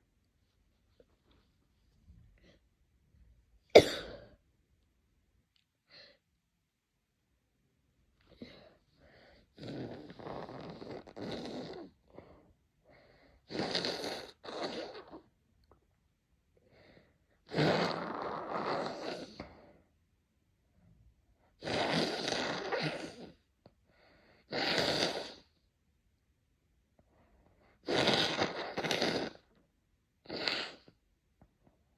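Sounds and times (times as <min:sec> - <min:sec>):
quiet breaths: 0:00.2 - 0:03.4, 0:08.1 - 0:13.5, 0:18.8 - 0:21.6, 0:23.2 - 0:24.5
person sneezing: 0:03.8 - 0:04.3
person blowing nose: 0:09.6 - 0:11.9, 0:13.5 - 0:15.2, 0:17.5 - 0:19.4, 0:21.6 - 0:23.3, 0:24.5 - 0:25.5, 0:27.8 - 0:29.5, 0:30.3 - 0:30.9.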